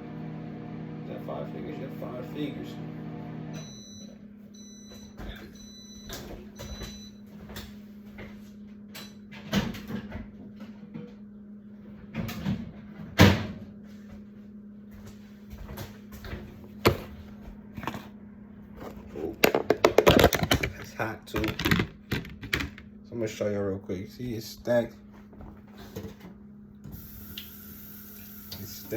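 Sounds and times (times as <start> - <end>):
microwave oven beeps: 0.0 - 9.5, 26.8 - 28.9.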